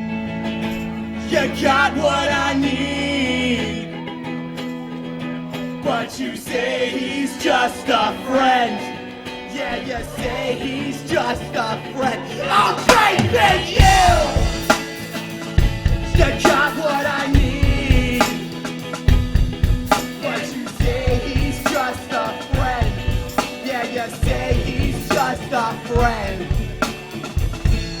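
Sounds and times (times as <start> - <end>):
ska band playing live: 0.0 - 28.0
drum kit beat: 12.8 - 28.0.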